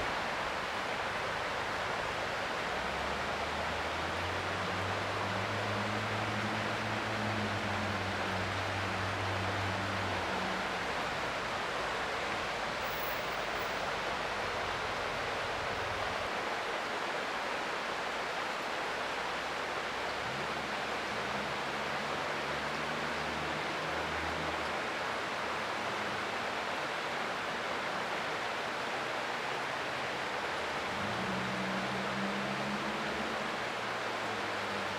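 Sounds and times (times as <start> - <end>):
creek water rushing: 0.0 - 34.9.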